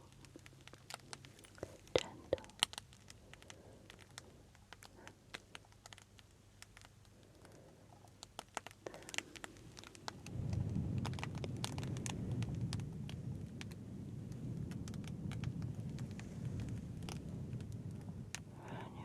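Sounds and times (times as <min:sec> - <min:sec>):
low rumbling noise: 0:00.0 - 0:19.0
sharp crackles and ticks: 0:00.0 - 0:19.0.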